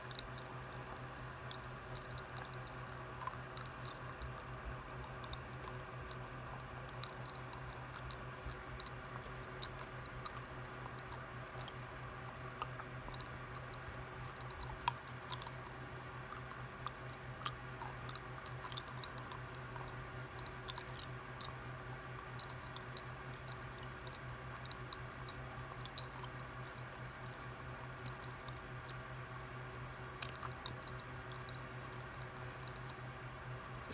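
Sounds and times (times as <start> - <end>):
small clicks and ticks: 0.0 - 33.9
steady low hum: 0.0 - 33.9.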